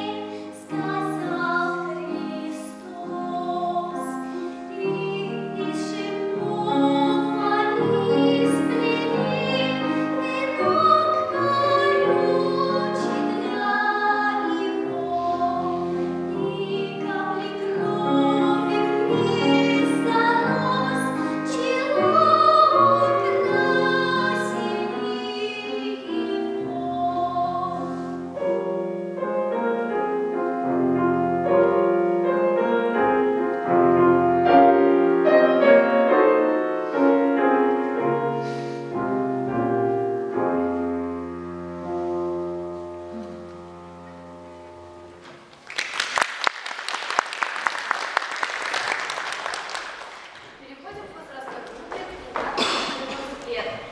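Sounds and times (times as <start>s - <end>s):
person singing operatic song: 0.0s - 28.4s
piano accompaniment: 0.0s - 53.9s.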